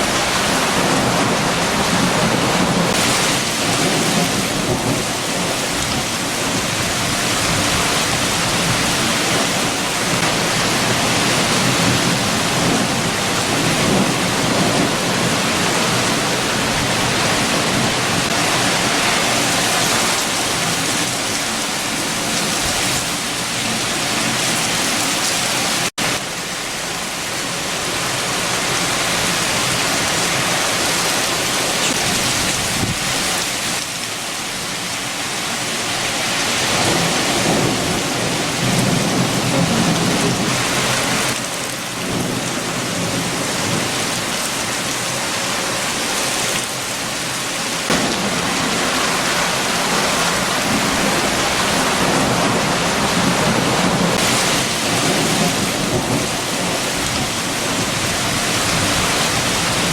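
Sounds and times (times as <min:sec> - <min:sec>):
heavy rain: 0:00.0 - 0:59.9
strong wind: 0:00.0 - 0:59.9.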